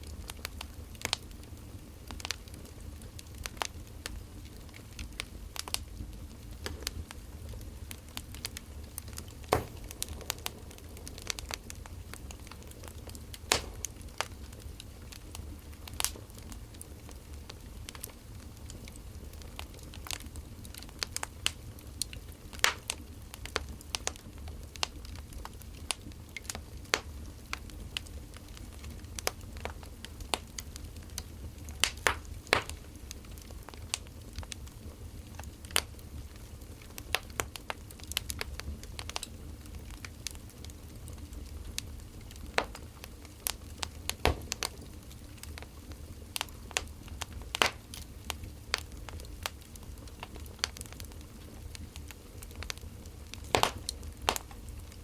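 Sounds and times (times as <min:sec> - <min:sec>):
firewood crackling and popping: 0:00.0 - 0:55.0
low steady rumble: 0:02.7 - 0:19.4.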